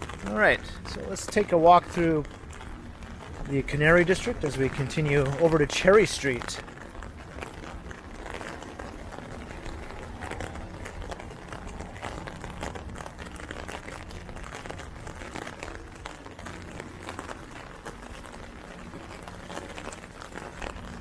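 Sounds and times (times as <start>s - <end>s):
heavy rain falling: 0.0s - 21.0s
ticks of raindrops landing: 0.0s - 21.0s.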